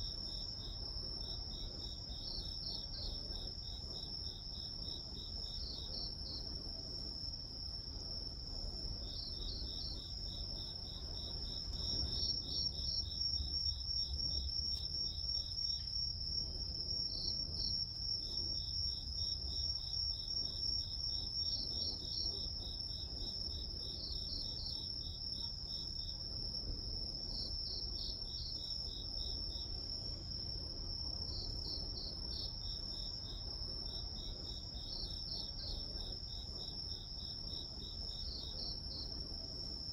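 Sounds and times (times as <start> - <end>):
crickets pulsed chirps: 0.0 - 39.9.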